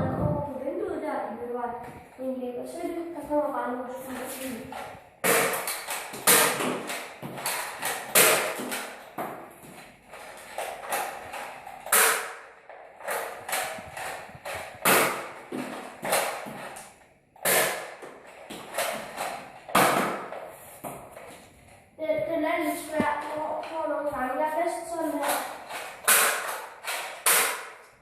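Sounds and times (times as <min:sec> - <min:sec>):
toy blaster clacks and thuds: 0:04.1 - 0:21.4, 0:25.0 - 0:28.0.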